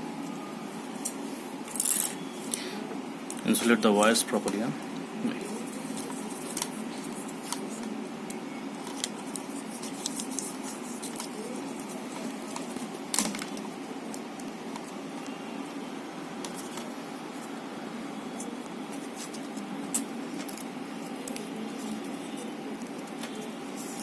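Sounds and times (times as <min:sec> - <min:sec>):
hands handling wiring: 0:05.4 - 0:15.4, 0:18.3 - 0:24.0.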